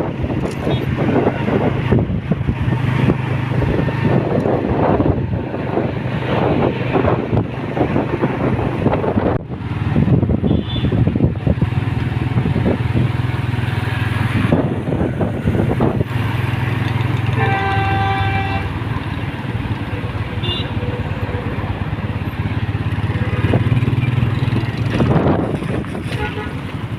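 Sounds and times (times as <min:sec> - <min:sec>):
street traffic engines: 0:00.0 - 0:26.9
vehicle horn: 0:10.4 - 0:11.0, 0:17.3 - 0:18.7, 0:20.4 - 0:20.8, 0:26.1 - 0:26.6.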